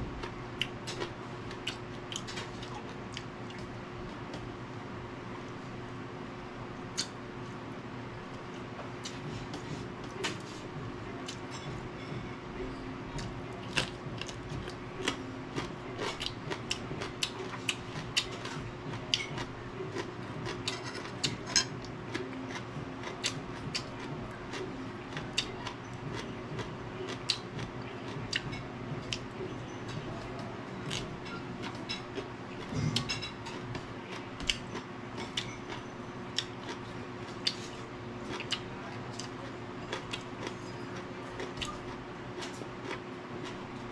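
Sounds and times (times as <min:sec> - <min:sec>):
steady low hum: 0:00.0 - 0:43.9
crunchy vegetables being chewed: 0:00.2 - 0:04.5, 0:13.1 - 0:43.9.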